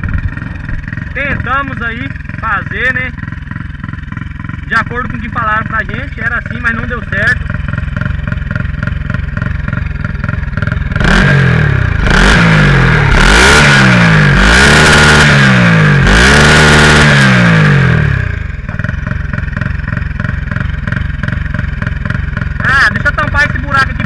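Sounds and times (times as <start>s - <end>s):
motorcycle engine idling and revving: 0.0s - 24.0s.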